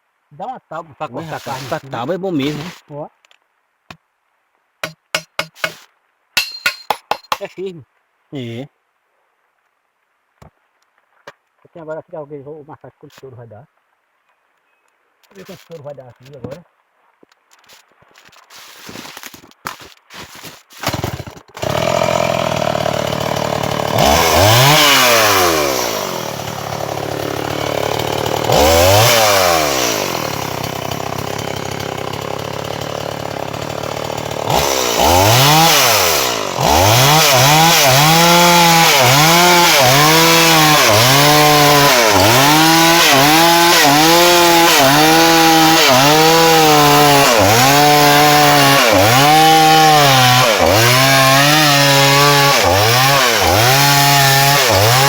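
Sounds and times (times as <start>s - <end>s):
chainsaw cutting log: 1.4s - 2.8s, 4.8s - 7.5s, 18.6s - 55.0s.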